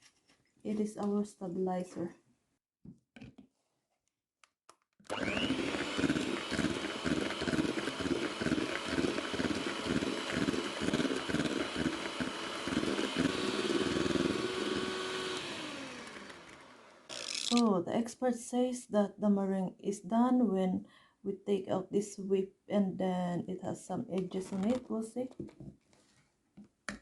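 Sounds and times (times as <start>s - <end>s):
electric mixer motor whining: 5.1s - 17.6s.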